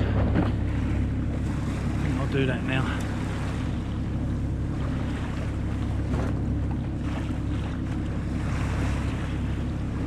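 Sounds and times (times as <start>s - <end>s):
boat engine low drone: 0.0s - 10.0s
sea washing past: 6.9s - 10.0s.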